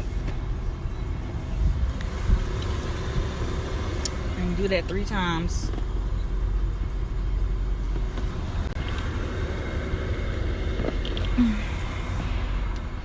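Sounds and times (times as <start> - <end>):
car engine rumble inside car: 0.0 - 13.0
short low vocal sound: 11.3 - 12.2.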